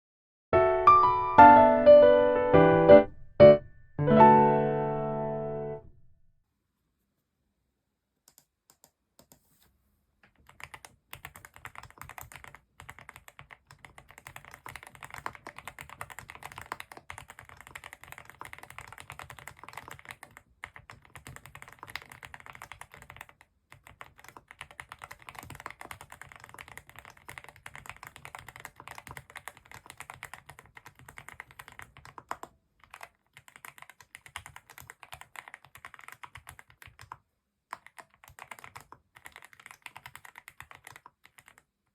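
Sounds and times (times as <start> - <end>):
typing on mechanical keyboard: 10.2 - 41.8.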